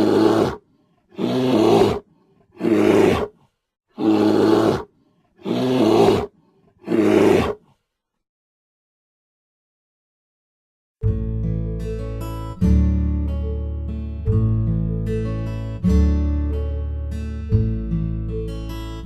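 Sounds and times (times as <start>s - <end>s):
bear roaring: 0.0s - 3.4s, 4.0s - 7.6s.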